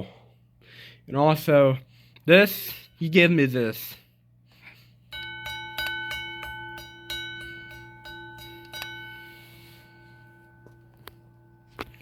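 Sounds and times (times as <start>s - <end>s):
metal alarm bell gong ringing: 4.8s - 12.0s.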